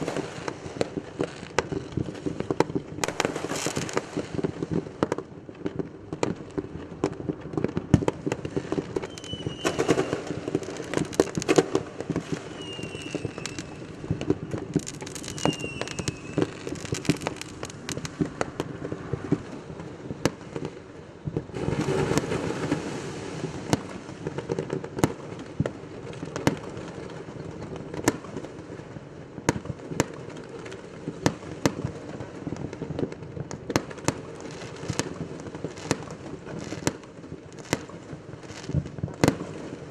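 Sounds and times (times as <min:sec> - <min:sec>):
fireworks bangs and pops: 0:00.0 - 0:39.9
fireworks crackling: 0:00.0 - 0:39.9
falling firework whistles: 0:08.6 - 0:19.4.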